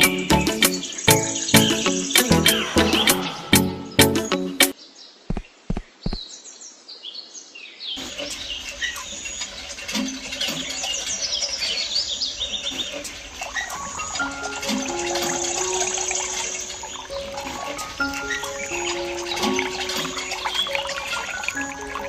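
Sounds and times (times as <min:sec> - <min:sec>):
birds chirping: 0:00.0 - 0:22.0
dull low thumps: 0:05.3 - 0:06.2.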